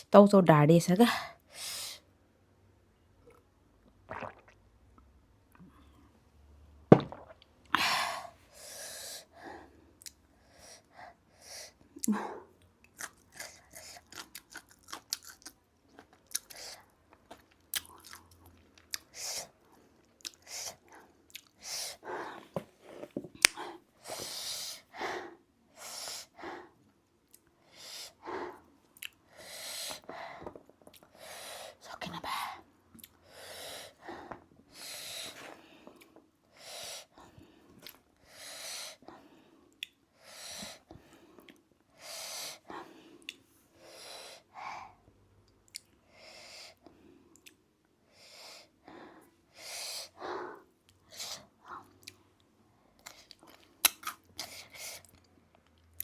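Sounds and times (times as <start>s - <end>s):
person chewing noodles: 4.1s - 4.5s, 12.8s - 21.6s.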